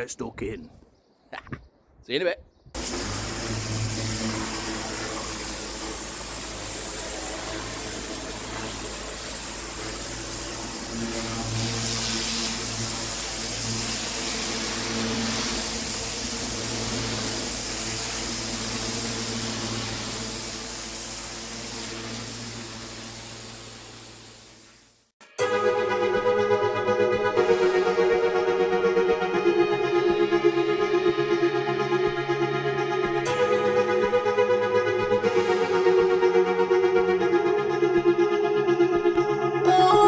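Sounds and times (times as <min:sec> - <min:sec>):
pressure washer engine humming: 0:02.8 - 0:24.5
high-pressure water jet hissing: 0:02.8 - 0:25.0.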